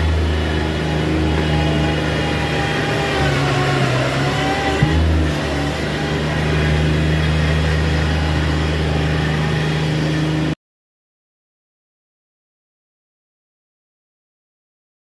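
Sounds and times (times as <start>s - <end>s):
mini track loader engine running: 0.0s - 10.6s.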